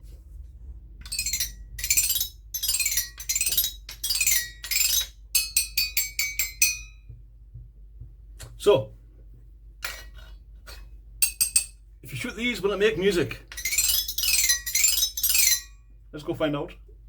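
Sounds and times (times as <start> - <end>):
metallic chimes jangling: 1.1 - 6.8, 13.5 - 15.7.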